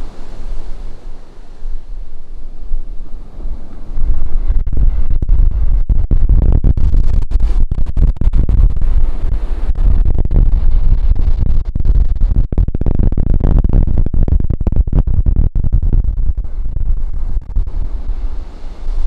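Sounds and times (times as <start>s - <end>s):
ocean surf on a beach: 0.0s - 4.5s, 17.6s - 19.0s
wind buffeting microphone: 0.0s - 19.0s.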